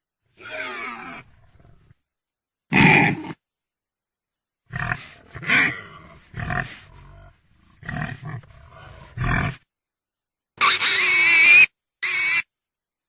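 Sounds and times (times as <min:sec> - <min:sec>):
pig grunting: 0:02.7 - 0:03.4, 0:04.7 - 0:09.6.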